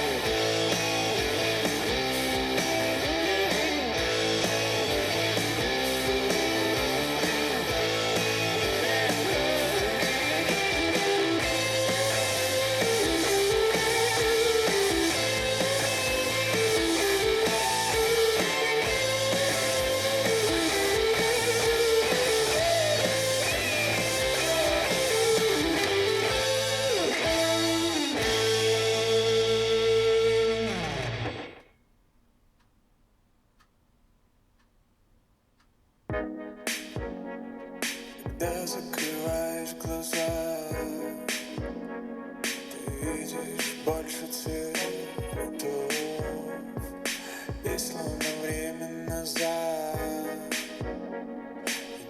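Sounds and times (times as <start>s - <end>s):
instrumental guitar music: 0.0s - 31.7s.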